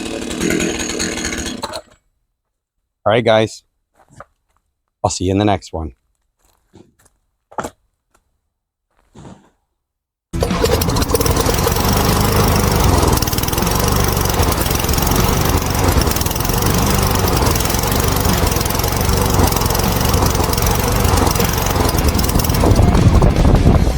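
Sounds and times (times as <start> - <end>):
chainsaw engine running: 0.0 - 1.7, 10.4 - 23.8.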